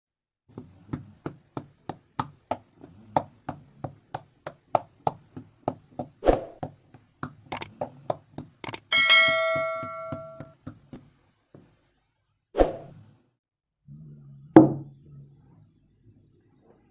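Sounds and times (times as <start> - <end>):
sharp clicks or taps: 3.5 - 11.1
heavy knock: 9.0 - 10.5.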